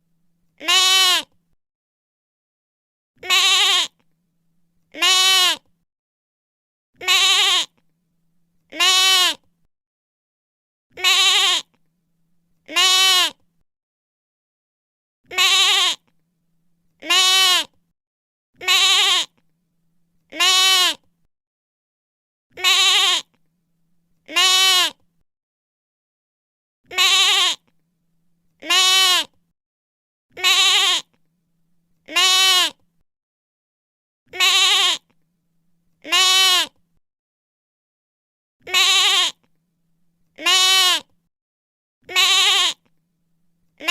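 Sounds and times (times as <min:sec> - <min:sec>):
lamb bleating: 0:00.6 - 0:01.4, 0:03.2 - 0:04.0, 0:04.9 - 0:05.6, 0:07.0 - 0:07.8, 0:08.7 - 0:09.4, 0:11.0 - 0:11.7, 0:12.7 - 0:13.4, 0:15.3 - 0:16.1, 0:17.0 - 0:17.7, 0:18.6 - 0:19.4, 0:20.3 - 0:21.0, 0:22.6 - 0:23.3, 0:24.3 - 0:25.0, 0:26.9 - 0:27.7, 0:28.6 - 0:29.3, 0:30.4 - 0:31.1, 0:32.1 - 0:32.8, 0:34.3 - 0:35.1, 0:36.0 - 0:36.8, 0:38.6 - 0:39.5, 0:40.4 - 0:41.0, 0:42.1 - 0:42.9.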